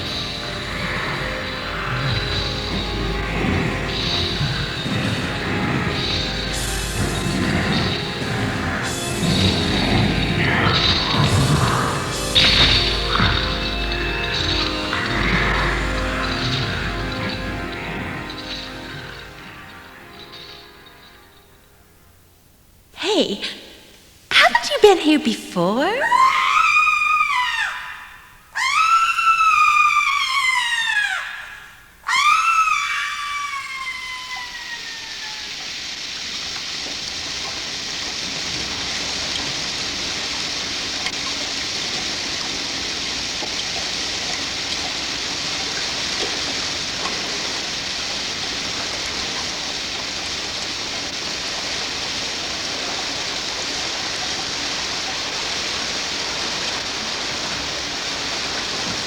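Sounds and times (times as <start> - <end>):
high shrieks sliding in pitch: 0.0 - 21.3
heavy rain hissing: 0.0 - 21.8, 33.2 - 59.0.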